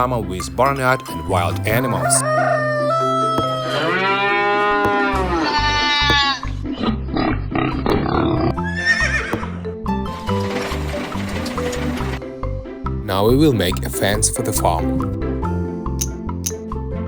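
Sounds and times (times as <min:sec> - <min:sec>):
background music: 0:00.0 - 0:17.0
farm animal calls: 0:01.7 - 0:07.8.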